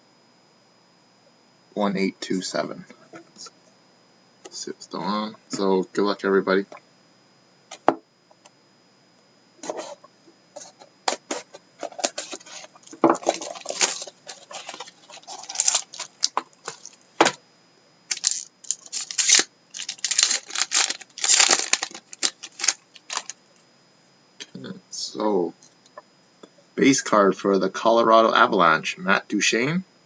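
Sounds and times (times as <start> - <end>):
plastic wrapping crinkling and tearing: 11.1 - 17.4, 18.1 - 23.4.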